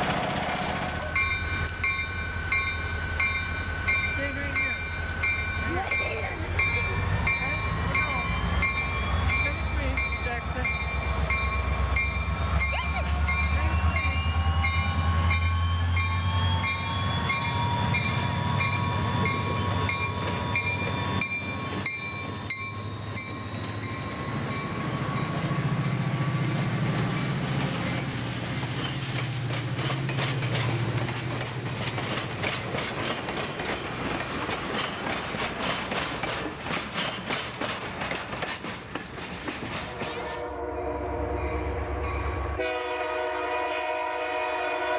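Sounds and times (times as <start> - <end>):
train wheels clicking over rail joints: 0.0 - 40.7
locomotive engine rumble: 0.0 - 43.3.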